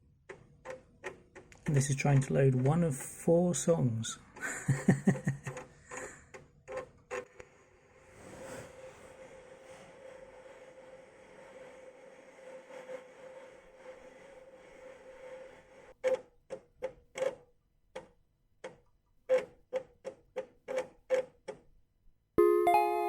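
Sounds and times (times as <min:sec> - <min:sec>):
faint held tone: 0:22.4 - 0:23.0.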